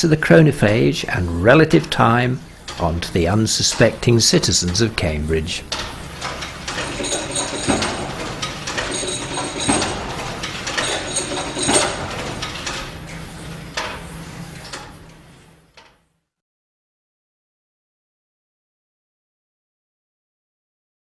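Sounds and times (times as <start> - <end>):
clock mechanism clicking and clanking: 6.8 - 10.2, 10.8 - 12.3
short metallic rings: 6.8 - 12.4.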